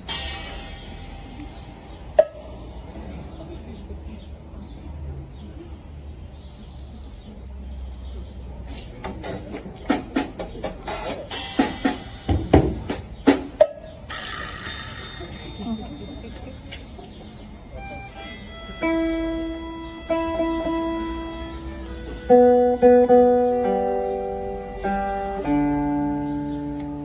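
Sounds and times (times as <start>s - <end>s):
drum-like percussive hits: 0.0s - 2.7s, 9.1s - 16.0s.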